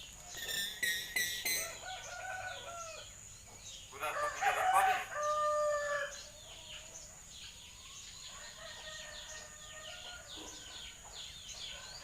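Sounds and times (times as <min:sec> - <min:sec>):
small birds chirping: 0:00.0 - 0:12.0
loud crowing call: 0:03.9 - 0:06.1.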